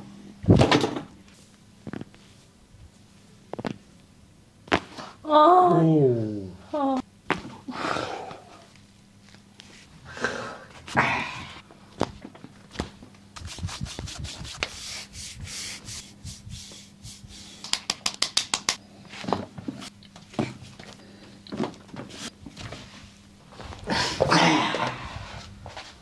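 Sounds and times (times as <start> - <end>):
hands rubbing during massage: 13.4 - 18.8.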